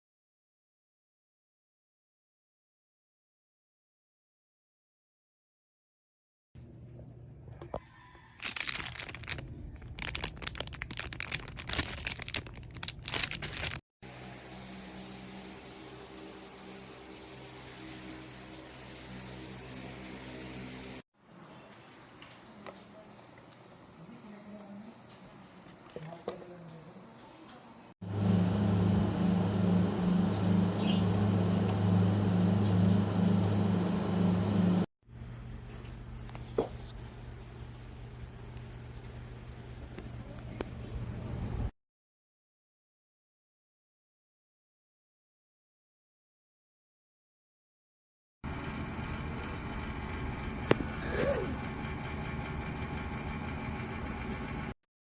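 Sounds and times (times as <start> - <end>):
plastic packaging crinkling: 8.4 - 13.8
computer fan whirring: 28.0 - 41.7, 48.5 - 54.7
steady low hum: 28.0 - 41.7.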